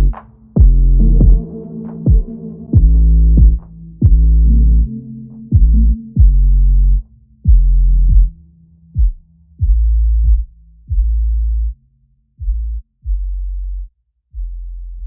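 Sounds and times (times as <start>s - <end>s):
electronic music booming bass: 0.0s - 11.8s.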